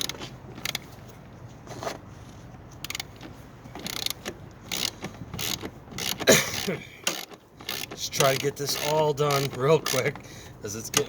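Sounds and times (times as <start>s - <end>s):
hand ratchet clicking: 2.8s - 11.0s.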